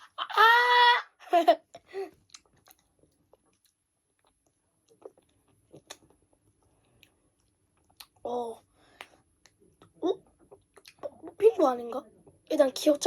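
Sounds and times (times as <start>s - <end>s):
wet mouth clicks eating: 2.3s - 6.2s.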